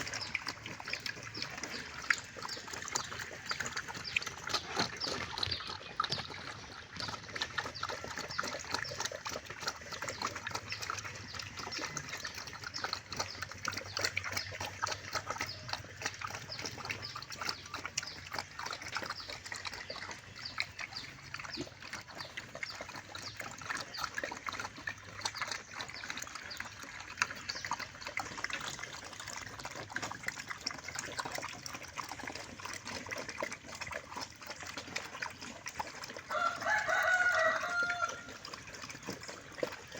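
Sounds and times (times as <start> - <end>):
pigs chewing and crunching: 0.0 - 39.9.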